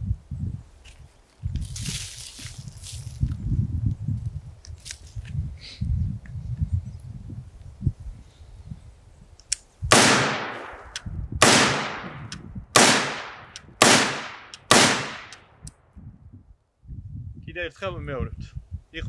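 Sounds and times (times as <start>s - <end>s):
rifle shots: 9.9s - 15.4s.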